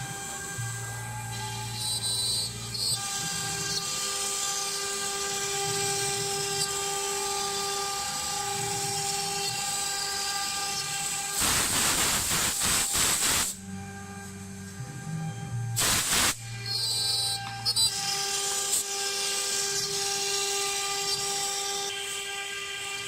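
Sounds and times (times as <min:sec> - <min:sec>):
cnc router spindle whine: 0:00.0 - 0:11.5, 0:13.4 - 0:15.8, 0:16.4 - 0:23.0.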